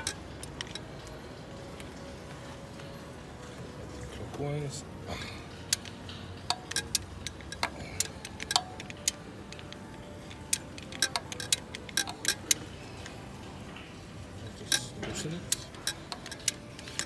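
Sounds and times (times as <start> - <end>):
hand tool metallic clicks and taps: 5.7 - 12.6, 14.7 - 17.0.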